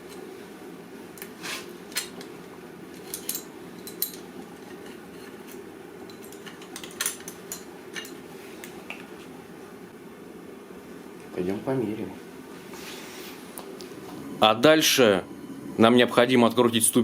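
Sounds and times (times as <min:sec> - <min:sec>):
metal tools clinking: 0:03.0 - 0:08.2
low hum: 0:13.7 - 0:16.9.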